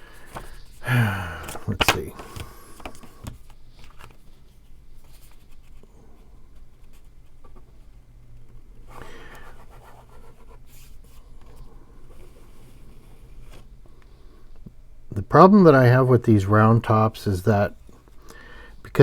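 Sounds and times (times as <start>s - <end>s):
paper rustling: 0.0s - 5.9s.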